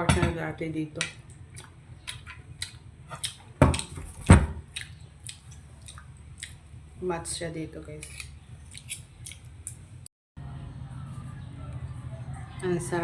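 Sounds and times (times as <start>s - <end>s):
person chewing: 1.5s - 6.7s, 8.1s - 9.8s
wet mouth clicks: 1.6s - 4.0s, 4.7s - 6.6s, 8.1s - 9.5s.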